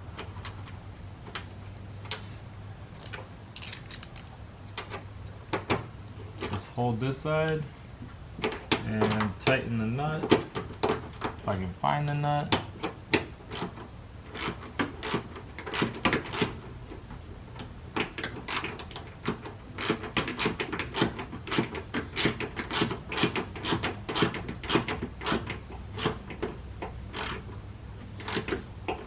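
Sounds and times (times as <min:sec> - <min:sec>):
hand ratchet clicking: 0:14.3 - 0:16.5.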